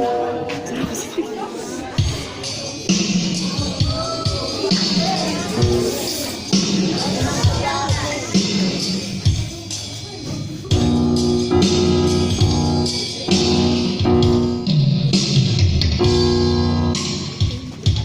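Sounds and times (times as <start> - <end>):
guitar chords: 10.7 - 17.4
bass: 10.7 - 18.0.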